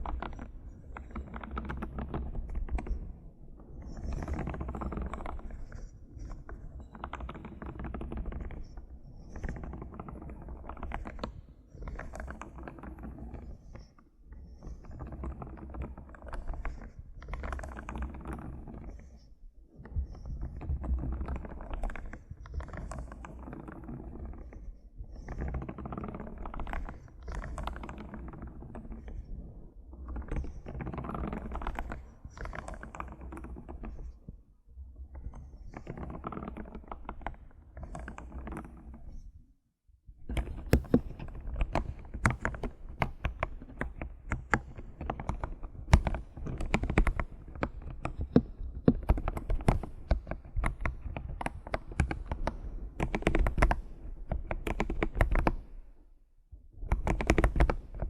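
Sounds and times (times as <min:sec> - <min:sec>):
keyboard key clicks with thuds: 0:40.4 - 0:42.7, 0:44.3 - 0:47.2.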